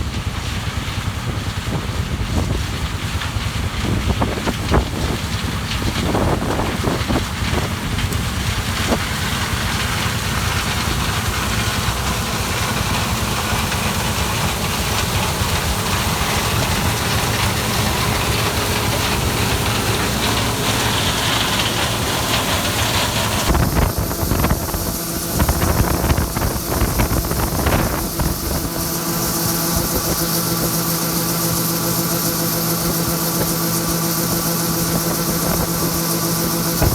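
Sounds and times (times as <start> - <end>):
large engine running: 0.0 - 36.9
wind on microphone: 1.1 - 9.1, 20.3 - 30.9, 32.8 - 36.9.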